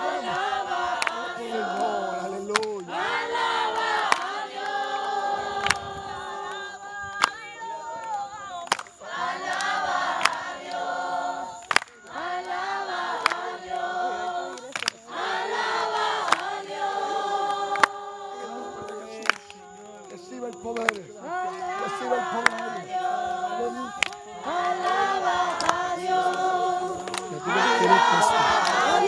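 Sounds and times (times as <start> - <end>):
group of people singing: 0.0 - 29.0
sharp click or clap: 2.5 - 2.8, 14.6 - 15.0, 18.8 - 19.6, 20.8 - 21.0, 25.6 - 25.8, 27.1 - 27.3.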